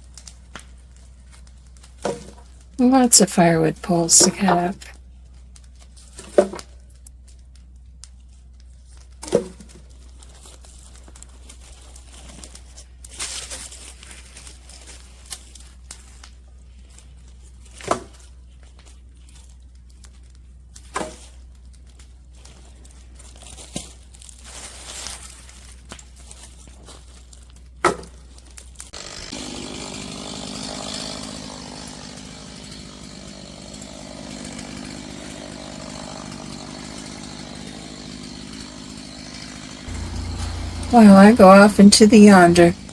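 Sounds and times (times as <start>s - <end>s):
chainsaw cutting wood: 1.8s - 4.9s, 28.9s - 42.9s.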